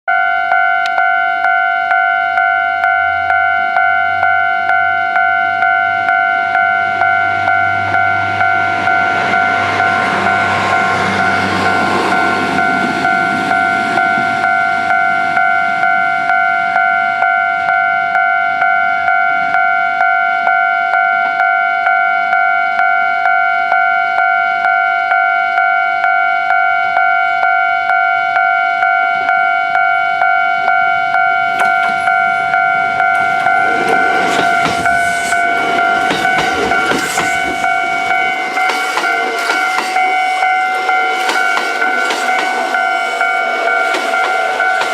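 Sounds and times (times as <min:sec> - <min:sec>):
level crossing bell ringing: 0:00.1 - 0:44.9
train wheels clattering over rails: 0:33.1 - 0:44.9.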